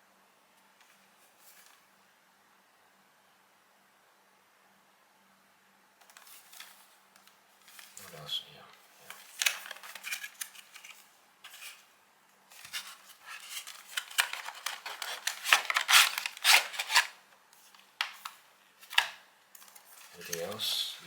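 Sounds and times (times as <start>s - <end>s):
cardboard packaging rustling: 8.9s - 11.9s, 12.5s - 21.0s.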